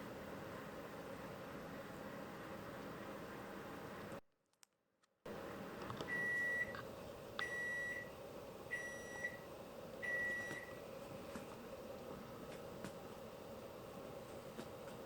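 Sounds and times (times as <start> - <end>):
appliance high beeps: 6.1 - 6.8, 7.4 - 10.8.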